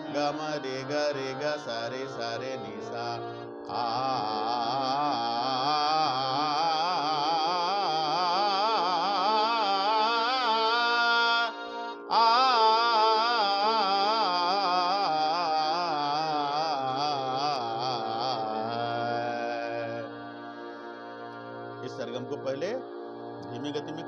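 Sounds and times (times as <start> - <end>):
keyboard playing fast runs: 0.0 - 24.0
steady held drone: 0.0 - 24.0.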